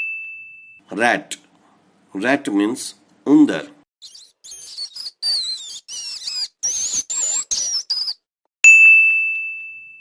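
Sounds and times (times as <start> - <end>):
bright ding: 0.0 - 0.8, 8.6 - 10.0
rat squeaking: 4.0 - 8.3.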